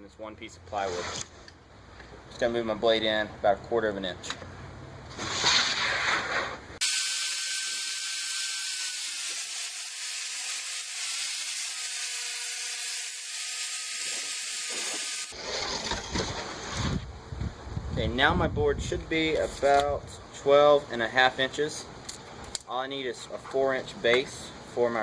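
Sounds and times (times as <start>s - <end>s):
circular saw cutting plywood: 6.8s - 15.4s.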